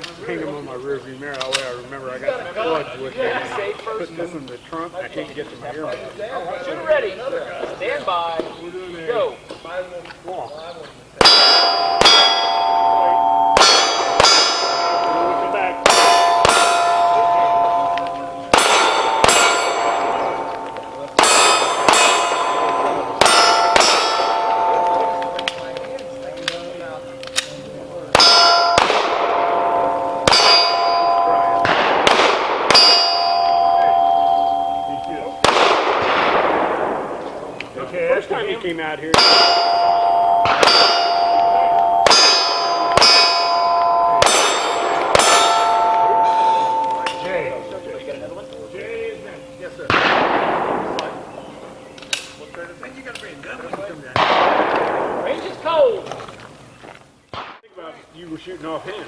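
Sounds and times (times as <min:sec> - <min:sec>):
steel target ringing: 0:11.2 - 0:37.6, 0:39.1 - 0:52.2
pistol shots: 0:11.2 - 0:37.8, 0:39.1 - 0:48.7, 0:49.4 - 0:52.4, 0:54.2 - 0:55.7, 0:57.3 - 0:57.6.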